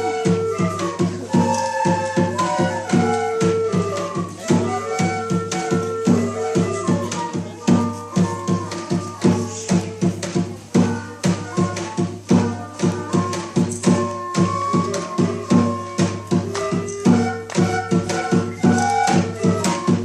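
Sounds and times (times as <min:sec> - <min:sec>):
steady drum beat: 0:00.0 - 0:20.0.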